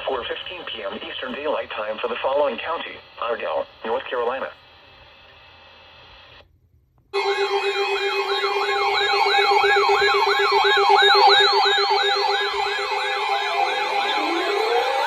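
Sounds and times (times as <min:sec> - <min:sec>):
electronic yelp siren: 0:07.2 - 0:15.0.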